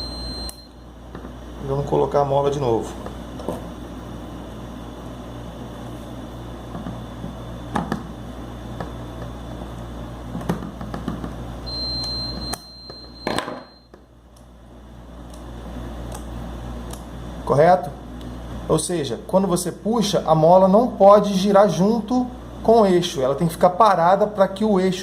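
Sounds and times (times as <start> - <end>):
high steady tone: 0.0 - 1.0, 11.6 - 14.0
steady hum: 0.0 - 25.0.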